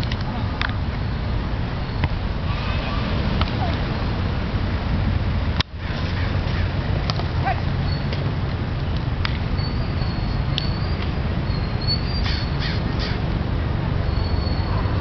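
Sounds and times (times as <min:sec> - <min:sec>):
crow cawing: 0:12.3 - 0:13.2.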